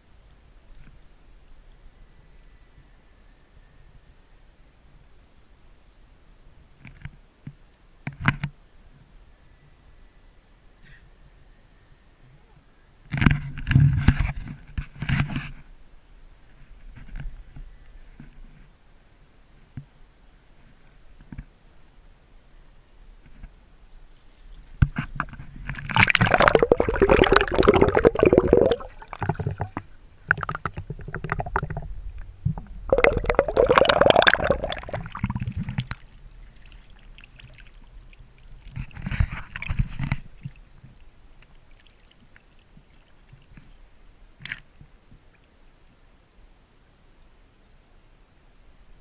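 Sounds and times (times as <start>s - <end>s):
water splashing and sloshing: 25.7s - 43.8s.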